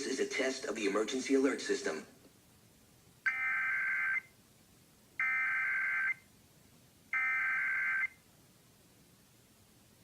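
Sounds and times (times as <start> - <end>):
buzzing two-tone digital code: 3.3 - 4.3.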